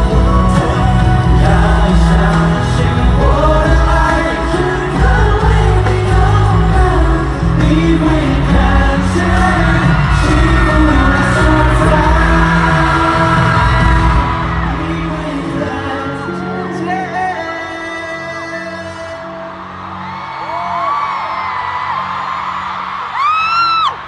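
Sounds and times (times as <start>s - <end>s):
person singing: 0.0s - 19.6s
live band playing a ballad: 0.0s - 19.9s
crowd whooping: 7.7s - 17.8s, 18.9s - 24.0s.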